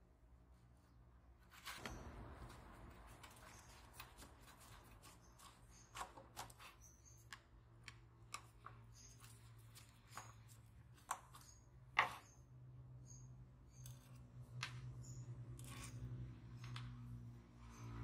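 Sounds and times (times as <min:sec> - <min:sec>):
light clicks and taps of hand work: 0:03.2 - 0:12.3, 0:16.6 - 0:17.1.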